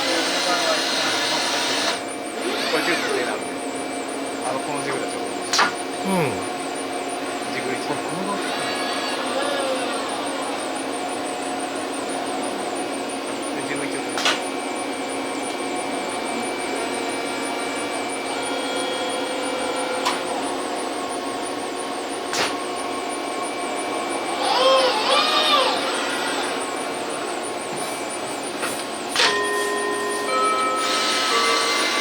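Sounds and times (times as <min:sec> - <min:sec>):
machinery humming: 0:02.2 - 0:14.3.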